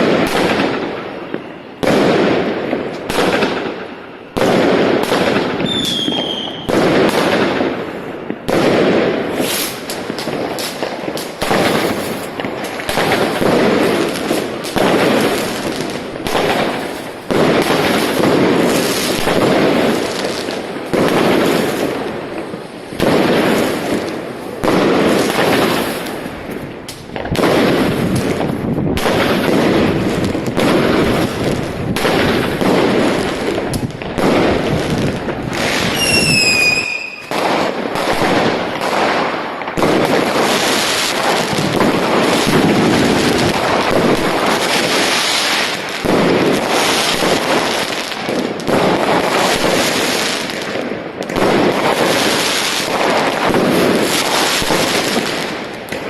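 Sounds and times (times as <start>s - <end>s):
fireworks bangs and crackling: 0.0s - 56.0s
falling firework whistle: 5.4s - 6.8s, 35.7s - 37.4s.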